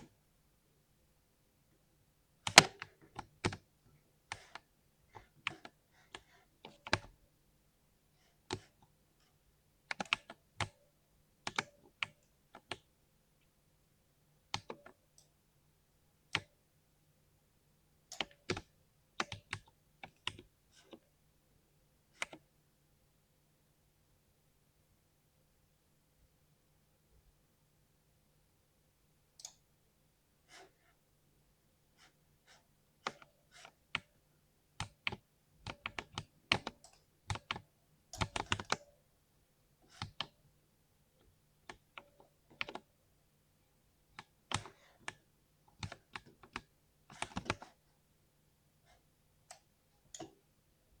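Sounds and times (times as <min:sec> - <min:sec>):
mechanical keyboard keystrokes: 0:38.2 - 0:38.8.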